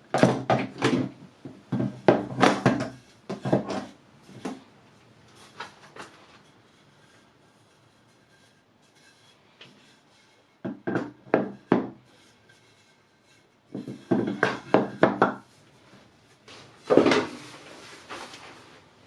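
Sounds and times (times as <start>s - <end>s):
wooden pieces knocking: 13.7s - 15.4s.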